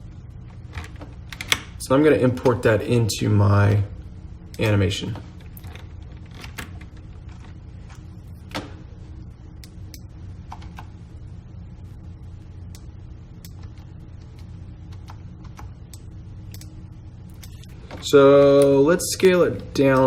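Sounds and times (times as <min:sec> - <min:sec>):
low electrical hum: 0:00.0 - 0:20.0
computer mouse clicks: 0:12.7 - 0:16.7.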